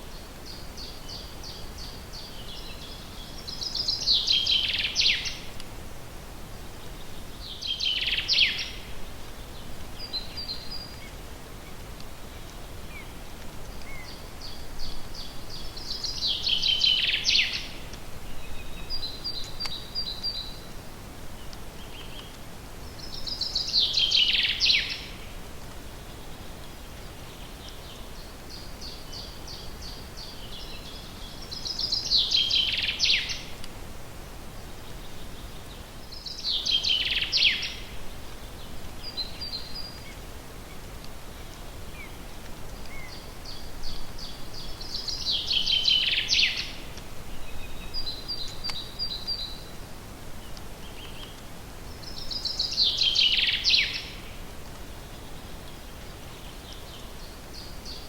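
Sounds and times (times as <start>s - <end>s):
songbird singing: 0.0s - 5.7s, 6.4s - 58.0s
steady background hiss: 0.0s - 58.0s.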